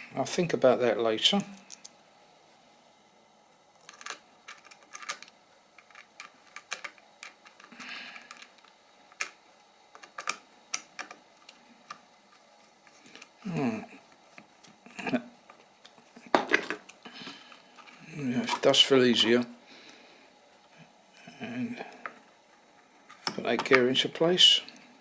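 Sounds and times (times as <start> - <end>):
plastic parts clicking: 3.8 - 12.0.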